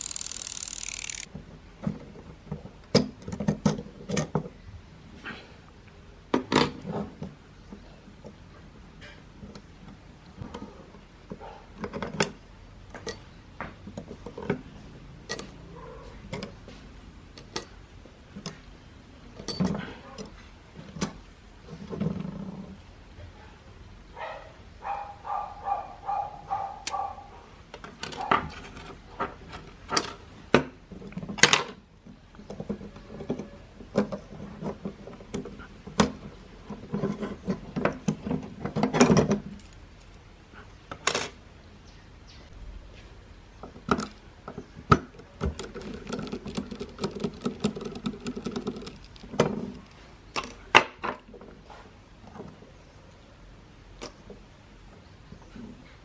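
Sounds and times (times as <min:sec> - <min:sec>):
small metal parts clicking: 0:00.0 - 0:01.3, 0:45.6 - 0:50.7.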